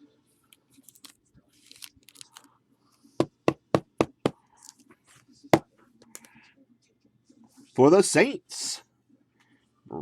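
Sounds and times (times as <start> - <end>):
cards and packaging rustling: 0.8 - 2.5.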